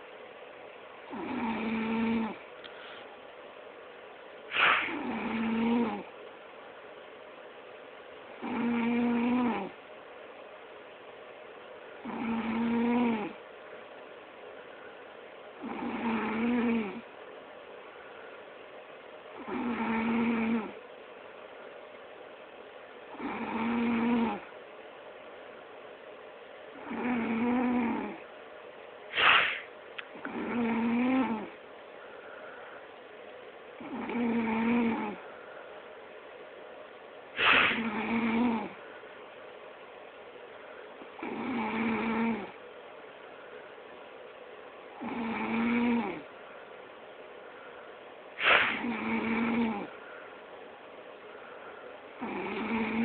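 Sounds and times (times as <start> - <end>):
person snoring: 1.1 - 2.4, 4.5 - 6.1, 8.4 - 9.8, 12.0 - 13.4, 15.6 - 17.1, 19.4 - 20.8, 23.1 - 24.5, 26.8 - 28.2, 29.1 - 31.6, 33.8 - 35.3, 37.4 - 38.8, 41.2 - 42.6, 45.0 - 46.3, 48.4 - 50.0, 52.2 - 53.0
rasping snort: 1.1 - 2.4, 4.5 - 6.1, 15.6 - 17.0, 19.4 - 20.7, 26.8 - 28.2, 29.1 - 31.5, 33.8 - 35.2, 37.4 - 38.8, 48.4 - 50.0, 52.2 - 53.0.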